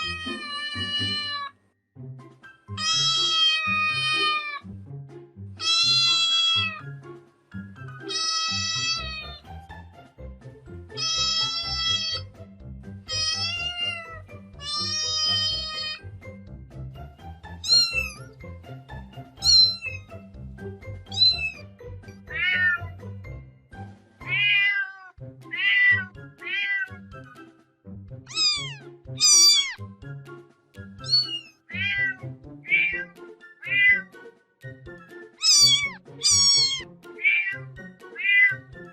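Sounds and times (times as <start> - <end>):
cat meowing: 0.0 - 1.5, 2.8 - 4.6, 5.6 - 6.9, 8.0 - 9.4, 11.0 - 12.2, 13.1 - 16.0, 17.6 - 18.3, 19.4 - 20.1, 21.1 - 21.6, 22.3 - 22.9, 24.2 - 27.0, 28.3 - 29.8, 31.0 - 34.1, 35.4 - 38.7
background music: 0.0 - 38.9.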